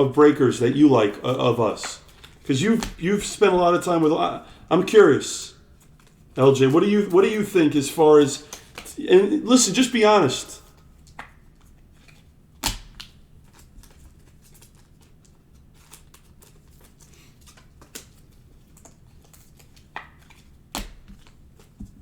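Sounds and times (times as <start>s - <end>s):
faint low hum: 0.0s - 10.8s
cards tapping and clicking: 0.5s - 4.6s, 5.8s - 9.0s, 11.0s - 22.0s.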